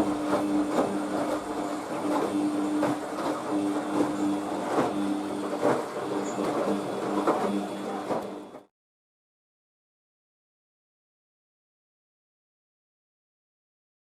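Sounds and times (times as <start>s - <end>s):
washing machine motor hum: 0.0s - 8.7s.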